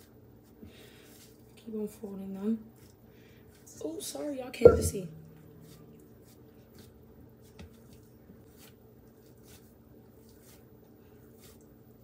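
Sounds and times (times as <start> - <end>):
hands squishing dough: 0.0 - 4.6, 5.2 - 12.0
small knock: 4.6 - 5.6.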